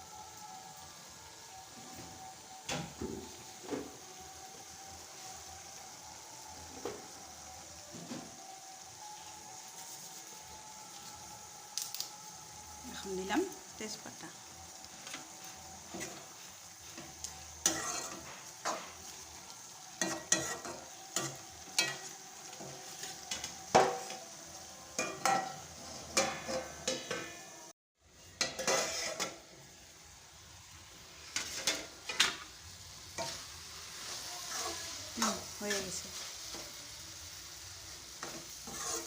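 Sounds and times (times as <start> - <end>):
food sizzling: 0.0 - 39.0
spatula scraping a pan: 14.8 - 24.2, 25.0 - 27.5, 28.2 - 29.6, 31.2 - 32.5, 33.1 - 36.7, 37.9 - 39.0.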